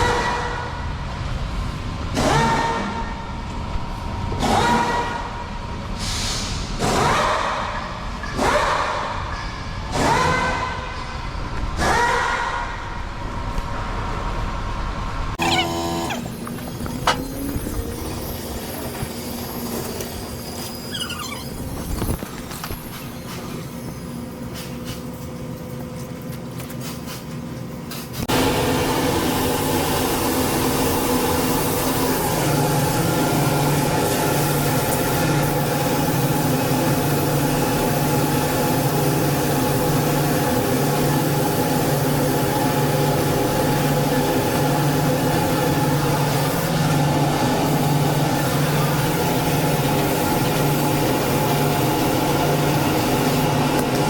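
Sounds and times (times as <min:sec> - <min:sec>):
machine humming with hiss: 0:28.3 - 0:54.0.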